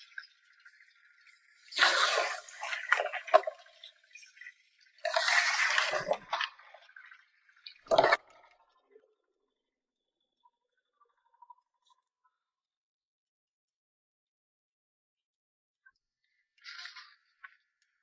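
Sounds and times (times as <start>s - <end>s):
water splashing: 1.5s - 8.6s.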